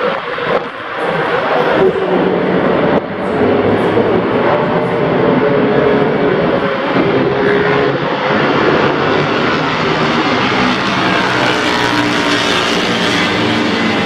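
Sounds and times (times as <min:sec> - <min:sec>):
racing motorcycle engines: 0:00.0 - 0:14.0.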